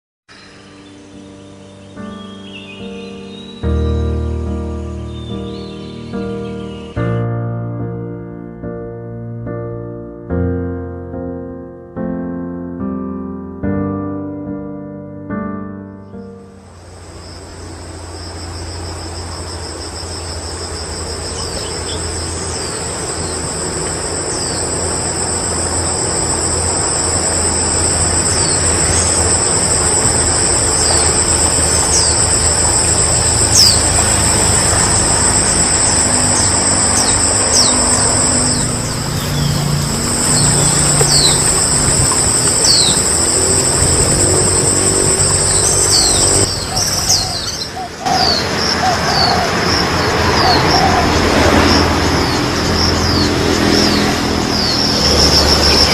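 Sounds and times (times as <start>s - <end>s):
insects shrilling: 16.7s - 55.9s.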